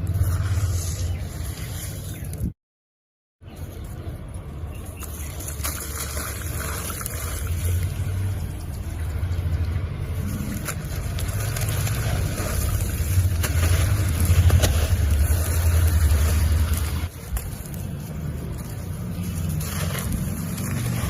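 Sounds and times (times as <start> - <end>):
cement being mixed by hand: 4.8 - 21.0.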